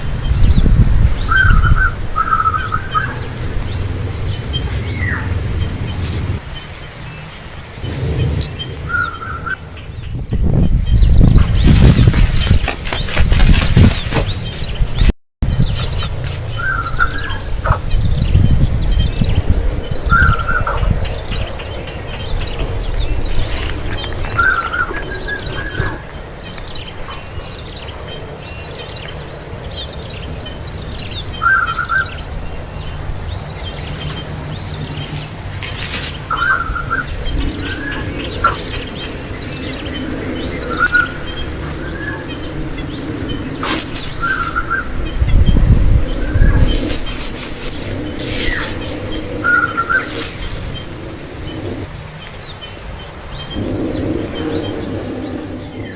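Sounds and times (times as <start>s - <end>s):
steady high hiss: 0.0s - 15.0s, 15.6s - 55.9s
low rumble: 53.4s - 55.9s.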